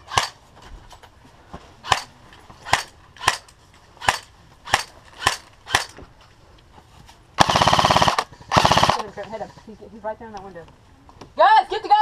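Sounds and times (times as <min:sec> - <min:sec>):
airsoft gun shots: 0:04.0 - 0:05.9, 0:07.4 - 0:09.1.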